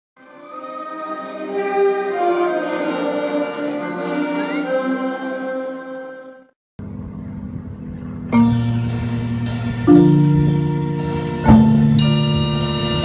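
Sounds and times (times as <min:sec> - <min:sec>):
sustained choral or orchestral chords: 0:00.2 - 0:06.5.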